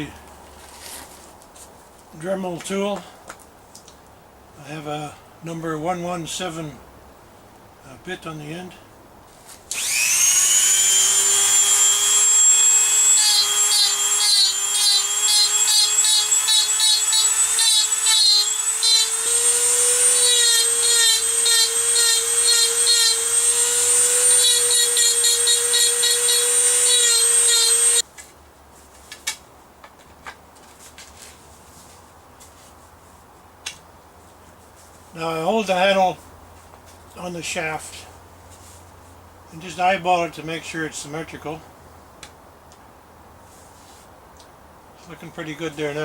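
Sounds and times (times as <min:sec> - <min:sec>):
bit biting into wood: 0:09.7 - 0:28.0
rotary tool whining: 0:09.7 - 0:28.0.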